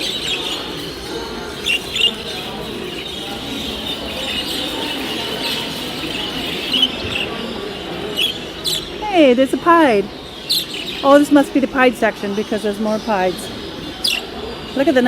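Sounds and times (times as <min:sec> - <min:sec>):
loud sharp bird chirps: 0:00.0 - 0:09.0, 0:10.1 - 0:11.3, 0:13.4 - 0:14.9
budgerigars chirping: 0:00.0 - 0:15.0.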